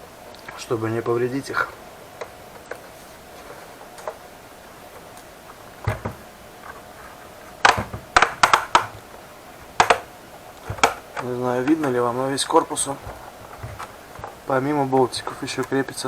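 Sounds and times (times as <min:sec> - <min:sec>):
plastic latches clicking loose: 0:07.5 - 0:16.0.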